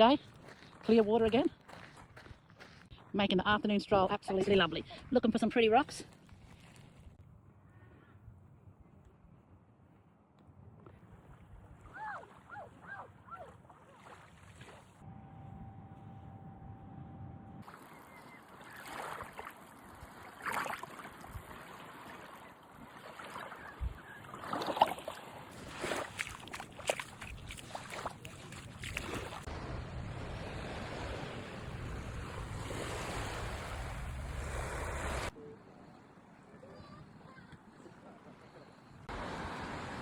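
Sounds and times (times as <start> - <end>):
small waves washing on beach: 17.6 - 35.4, 39.1 - 40.0.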